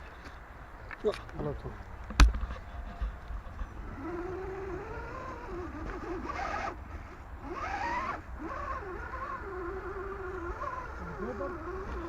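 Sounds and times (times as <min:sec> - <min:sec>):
electric motor whining: 0:03.8 - 0:12.0.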